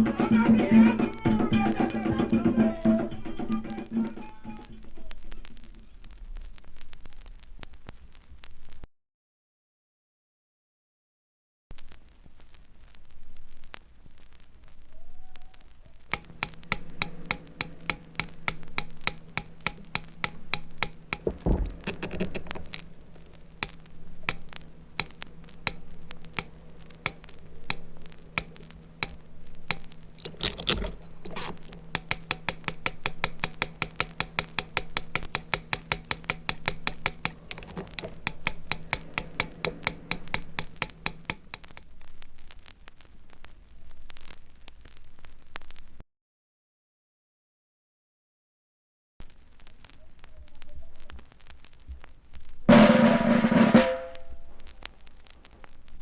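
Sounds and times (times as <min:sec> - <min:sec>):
rapid mechanical clicks: 0:16.1 - 0:42.3
heavy thumps: 0:16.1 - 0:42.6.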